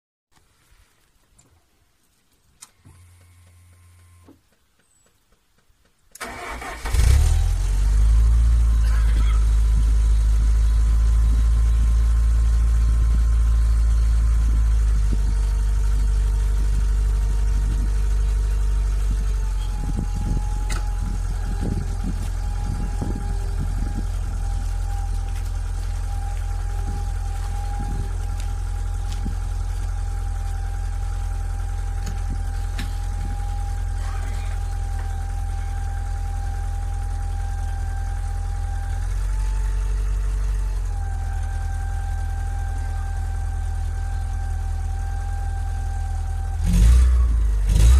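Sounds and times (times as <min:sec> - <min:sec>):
car engine idling: 0:02.7 - 0:47.9
starter motor cranking: 0:06.1 - 0:07.5, 0:19.1 - 0:36.2.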